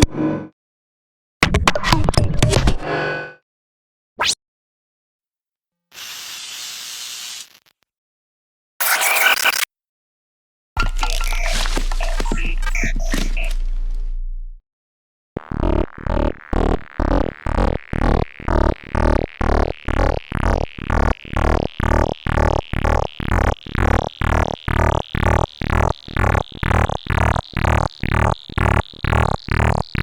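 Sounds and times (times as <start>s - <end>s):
stuttering electronic glitch pulses: 8.8s - 9.7s, 10.8s - 13.6s, 15.4s - 30.0s.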